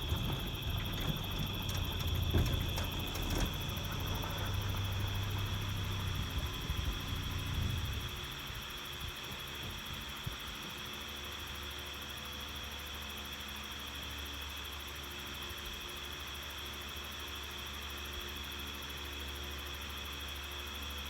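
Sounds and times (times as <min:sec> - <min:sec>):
vehicle engine rumbling: 0:00.0 - 0:10.1.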